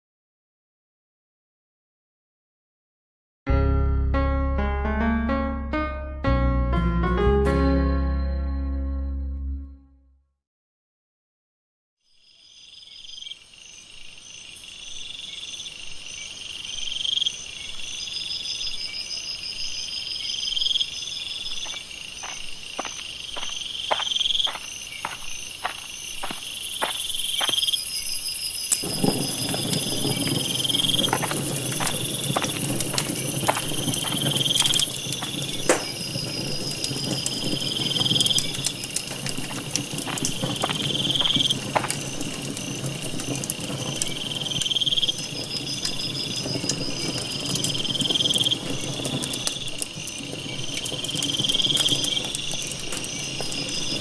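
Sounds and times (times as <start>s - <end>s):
crickets chirping: 12.1s - 54.0s
high insect buzz: 20.2s - 36.4s
campfire crackling with pops: 21.2s - 54.0s
rush of burning flames: 28.6s - 54.0s.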